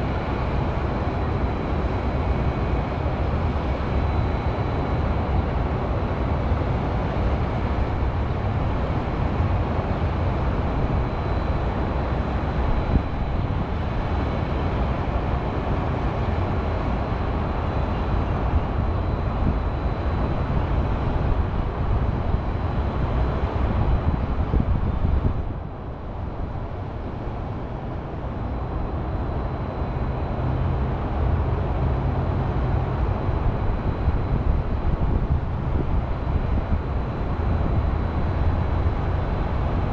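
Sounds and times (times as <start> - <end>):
highway traffic hum: 0.0 - 39.9.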